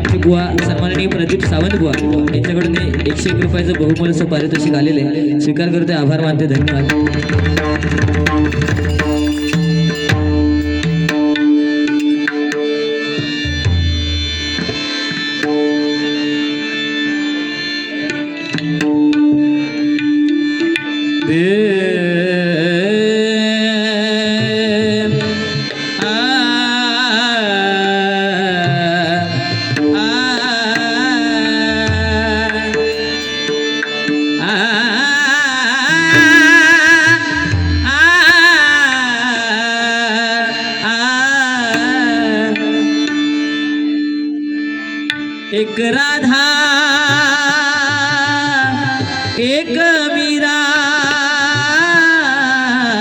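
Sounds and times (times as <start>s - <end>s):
drum accompaniment: 0.0s - 4.7s, 6.6s - 12.5s, 35.9s - 38.6s
harmonium drone: 0.0s - 53.0s.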